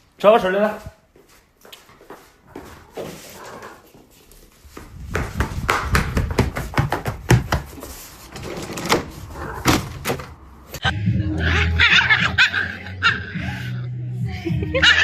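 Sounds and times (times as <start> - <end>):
irregular knocking and clattering: 5.1 - 10.4.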